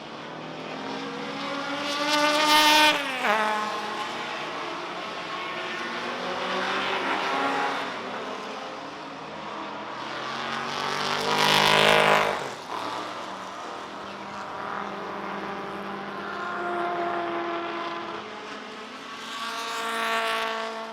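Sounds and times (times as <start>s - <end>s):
racing cars passing at high revs: 0.0s - 20.9s.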